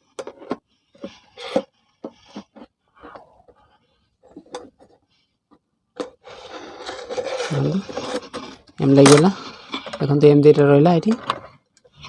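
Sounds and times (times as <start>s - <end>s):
plastic parts clicking and knocking: 0.0s - 3.6s.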